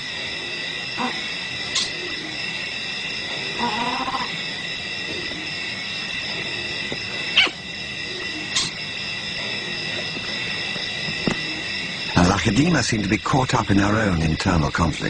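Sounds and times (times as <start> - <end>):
high-pitched natural background: 0.0 - 15.0
wild animal call: 1.0 - 2.4, 3.5 - 4.4, 6.6 - 8.8.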